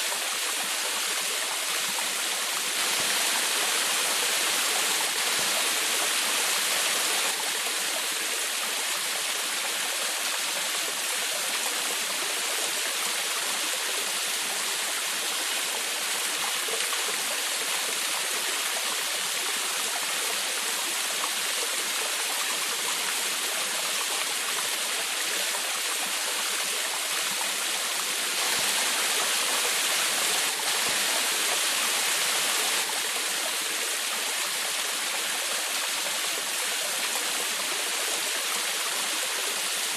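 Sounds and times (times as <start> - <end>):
waterfall splashing into stream: 25.5 - 39.9.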